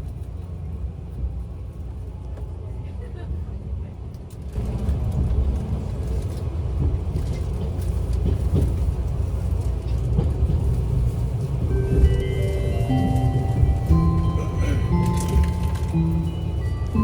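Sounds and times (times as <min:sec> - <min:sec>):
train rumbling: 0:00.0 - 0:17.0
multi-note chime: 0:11.9 - 0:17.0.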